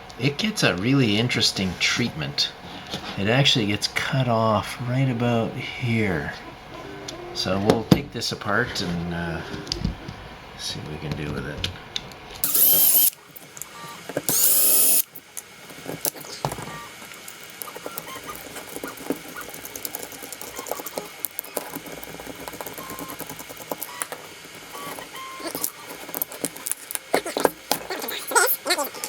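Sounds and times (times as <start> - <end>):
power screwdriver whirring: 12.4 - 13.2, 14.3 - 15.1.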